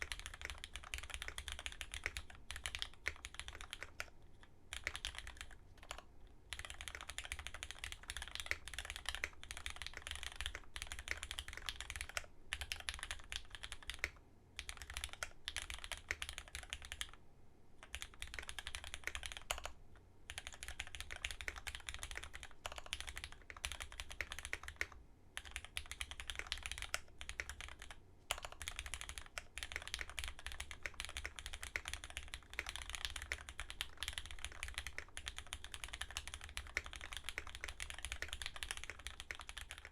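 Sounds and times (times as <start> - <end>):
mechanical keyboard keystroke clacks: 20.3 - 39.9.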